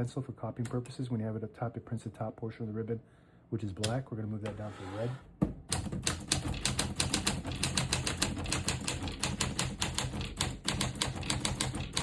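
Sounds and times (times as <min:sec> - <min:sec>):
manual typewriter key strikes: 0:05.7 - 0:12.0.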